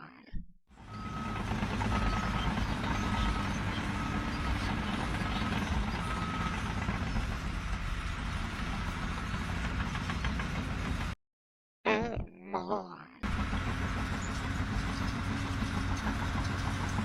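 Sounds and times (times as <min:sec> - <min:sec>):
heavy vehicle engine running: 0:00.7 - 0:11.2, 0:13.2 - 0:17.0
reversing alarm beeps: 0:00.8 - 0:08.2.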